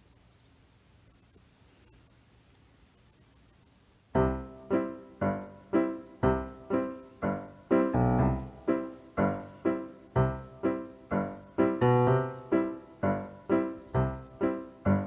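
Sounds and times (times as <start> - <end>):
keyboard notes: 4.2 - 15.0.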